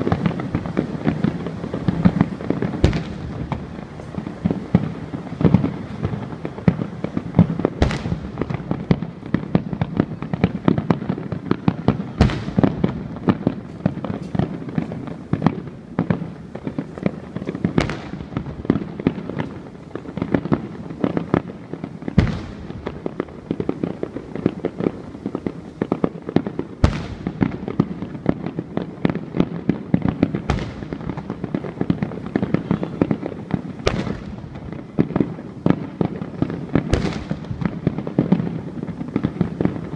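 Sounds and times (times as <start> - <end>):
fireworks crackle: 0.0 - 39.9
loud firework shell bursts: 7.7 - 11.0, 22.2 - 23.0, 26.8 - 28.2, 30.2 - 34.8, 36.8 - 38.4.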